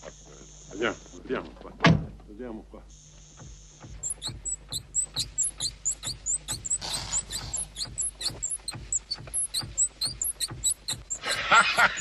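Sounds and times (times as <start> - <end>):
rhythmic high-pitched squeaking: 3.4 - 12.0.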